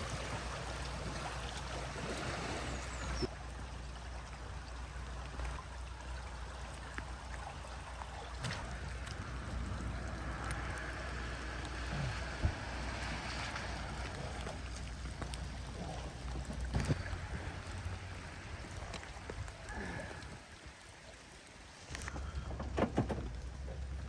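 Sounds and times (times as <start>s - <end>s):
low steady rumble: 0.0s - 24.0s
water running and splashing: 0.0s - 24.0s
short knocks: 22.2s - 23.4s.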